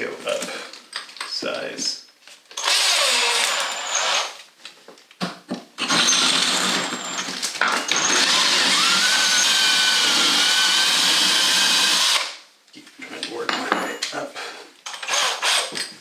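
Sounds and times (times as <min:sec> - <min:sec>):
electric drill boring: 0:02.6 - 0:04.4, 0:05.8 - 0:12.4, 0:14.9 - 0:15.8.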